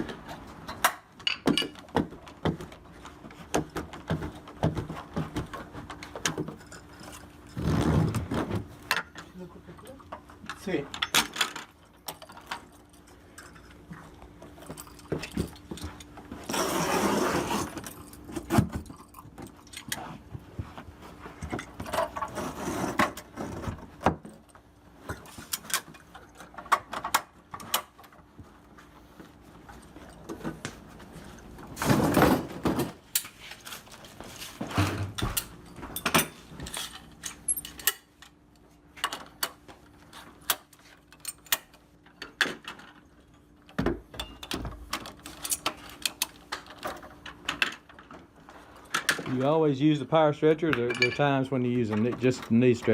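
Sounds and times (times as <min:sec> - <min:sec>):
carpet scraping and rustling: 0:15.4 - 0:18.8, 0:19.8 - 0:24.3.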